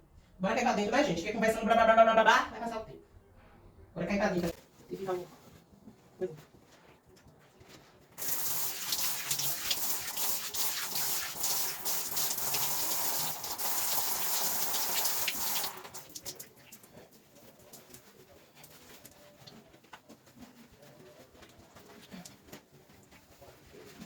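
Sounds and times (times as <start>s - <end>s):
running water gushing: 8.2s - 17.1s.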